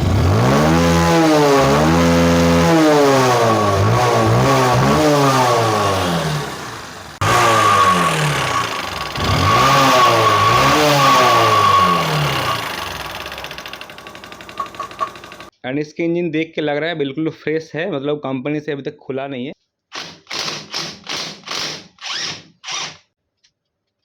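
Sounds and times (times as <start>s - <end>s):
motorcycle engine revving: 0.0s - 15.5s
engine knocking: 8.2s - 10.0s, 11.6s - 15.5s.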